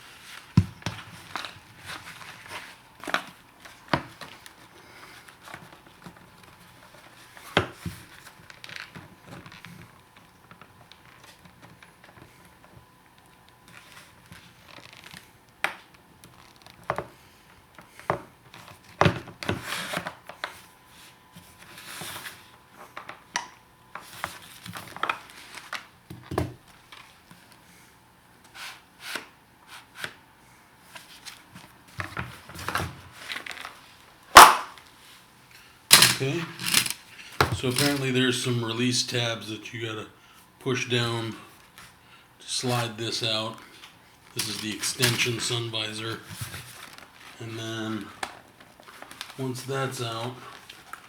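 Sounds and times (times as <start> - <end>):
plastic scraping and crinkling: 35.9 - 38.1, 43.8 - 51.0.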